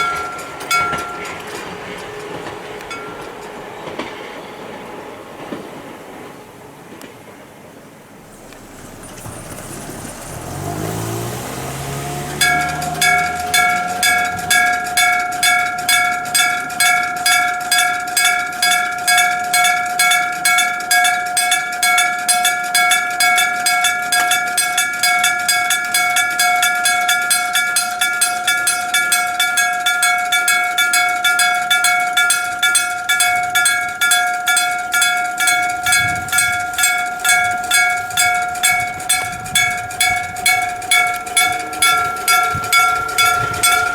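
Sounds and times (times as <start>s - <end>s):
level crossing bell ringing: 0.0s - 3.6s, 8.2s - 43.9s
low hum rising in pitch: 35.5s - 43.9s.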